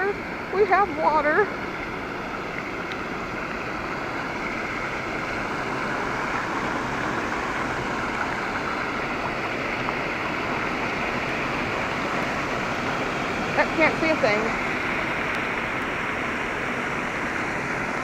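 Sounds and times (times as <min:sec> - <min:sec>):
heavy rain pouring: 0:03.6 - 0:18.0.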